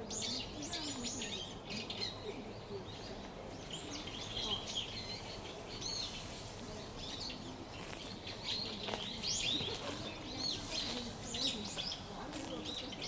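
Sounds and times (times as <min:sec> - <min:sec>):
small birds chirping: 0:00.0 - 0:13.0.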